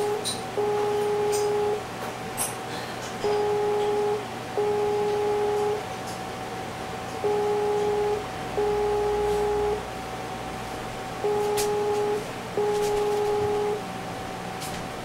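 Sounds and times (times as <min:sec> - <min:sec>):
steady high horn tone: 0:00.0 - 0:01.8, 0:03.2 - 0:05.8, 0:07.2 - 0:09.8, 0:11.2 - 0:13.8
low horn blasts: 0:03.2 - 0:05.8, 0:11.2 - 0:13.8.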